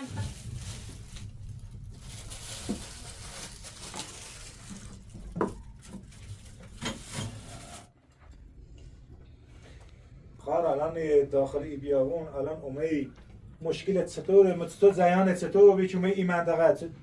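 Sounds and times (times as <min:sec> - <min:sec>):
low steady rumble: 0:00.1 - 0:06.6.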